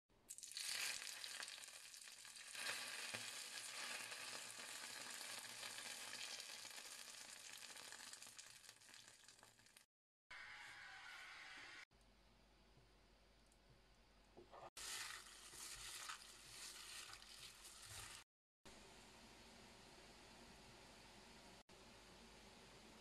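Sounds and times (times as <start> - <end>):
hot oil sizzling: 0.3 - 9.9, 14.8 - 18.3.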